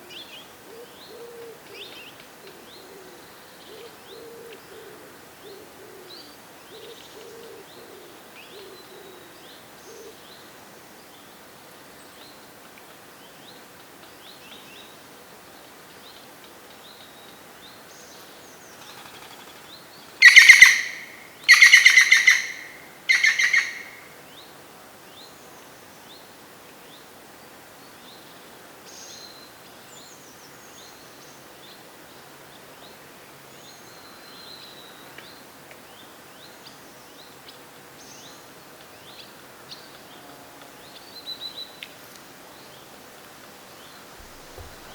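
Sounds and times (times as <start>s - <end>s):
pigeon cooing: 2.5s - 9.4s, 44.2s - 44.9s
small birds chirping: 19.8s - 24.0s, 43.6s - 44.9s
bird harsh calls: 20.2s - 24.1s, 44.2s - 44.9s.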